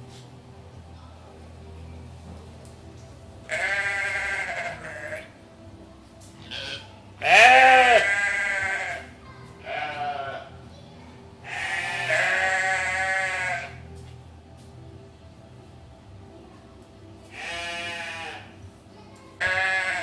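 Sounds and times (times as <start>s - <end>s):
goats bleating: 3.5s - 5.3s, 6.4s - 10.5s, 11.4s - 13.8s, 17.3s - 18.6s, 19.4s - 20.0s.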